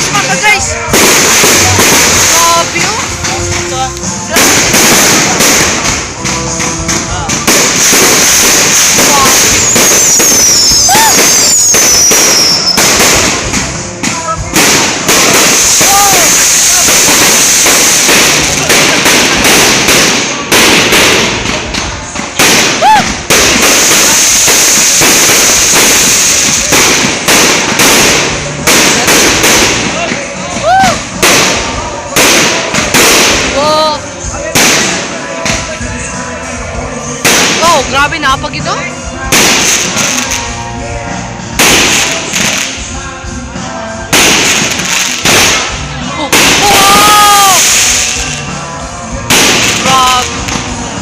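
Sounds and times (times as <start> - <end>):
fireworks bangs: 0.0 - 51.0
fireworks hiss and crackle: 0.0 - 51.0
music playing: 0.0 - 51.0.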